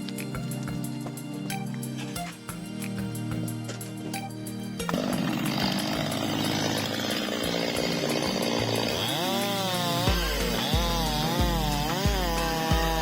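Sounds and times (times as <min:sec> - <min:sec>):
chainsaw cutting through wood: 0:04.8 - 0:13.0.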